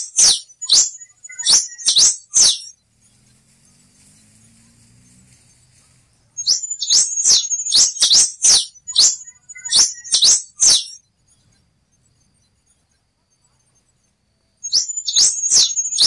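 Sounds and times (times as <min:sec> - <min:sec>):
finch singing: 0:00.0 - 0:02.8, 0:06.4 - 0:11.7, 0:14.6 - 0:16.0.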